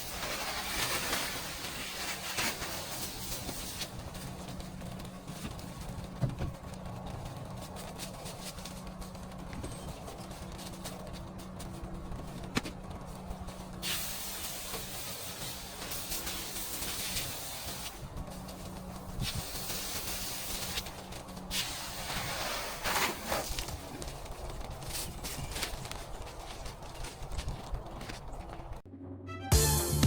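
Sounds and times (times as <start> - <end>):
pressure washer spray hissing: 13.8 - 17.9.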